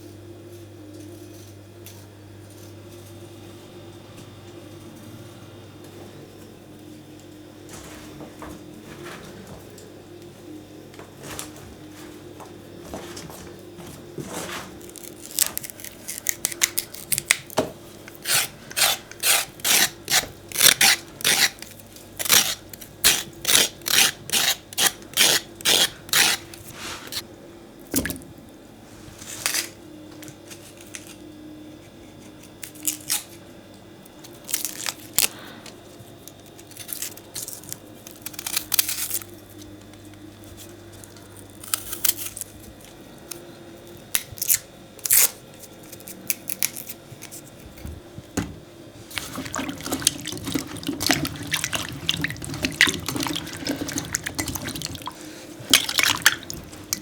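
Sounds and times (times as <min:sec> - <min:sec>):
faint steady hum: 0:00.0 - 0:57.0
knife cutting vegetables: 0:14.3 - 0:27.2, 0:49.0 - 0:57.0.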